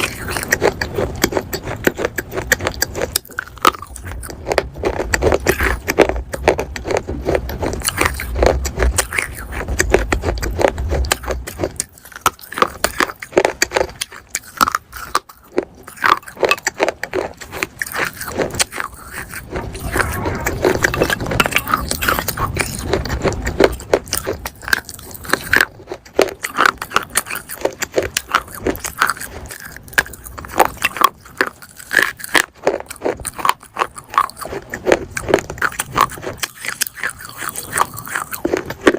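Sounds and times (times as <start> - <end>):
crunching hard clay: 0.0 - 38.9
low rumble: 17.0 - 30.9.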